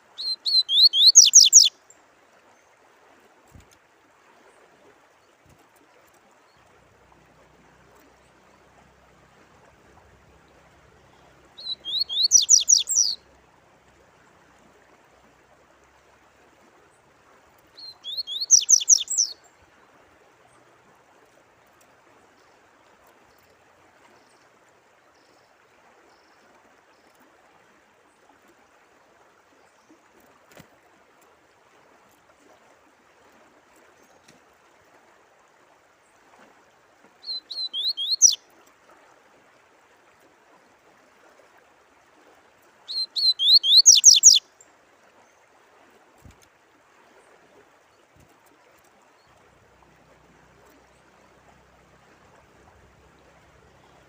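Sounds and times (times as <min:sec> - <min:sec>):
running water: 0:00.0 - 0:54.0
songbird singing: 0:00.1 - 0:02.0, 0:10.4 - 0:13.5, 0:17.7 - 0:19.7, 0:37.2 - 0:38.4, 0:42.9 - 0:44.7, 0:52.3 - 0:54.0.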